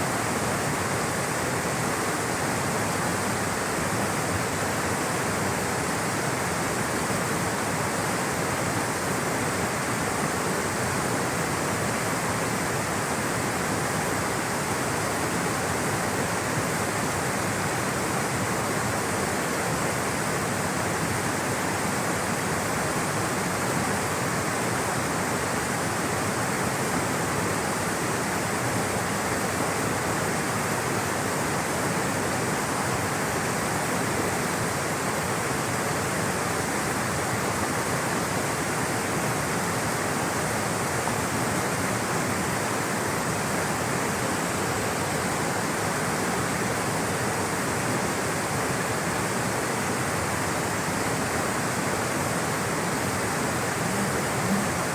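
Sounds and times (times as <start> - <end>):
rushing water: 0.0 - 54.9.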